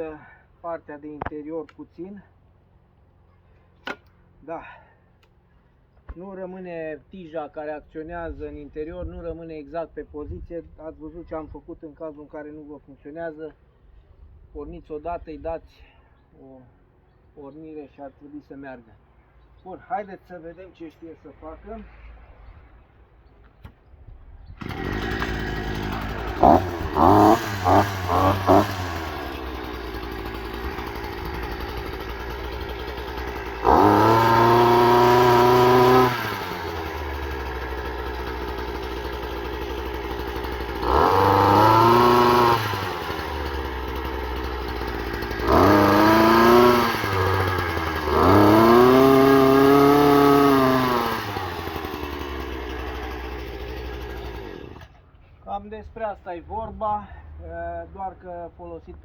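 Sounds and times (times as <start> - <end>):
two-stroke engine revving: 24.6 - 54.9.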